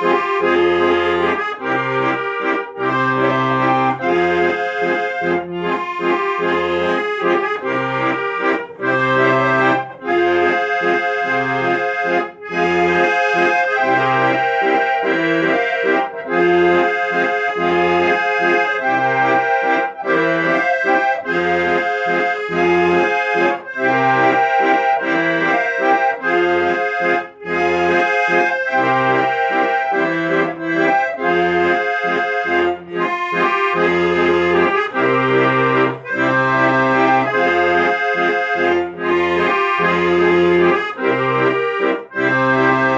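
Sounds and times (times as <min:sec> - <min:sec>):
accordion playing: 0:00.0 - 0:42.9.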